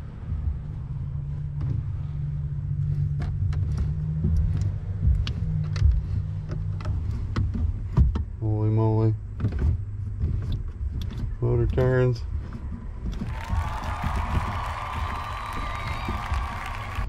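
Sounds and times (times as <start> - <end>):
steering mechanism clicking: 2.7 - 13.3.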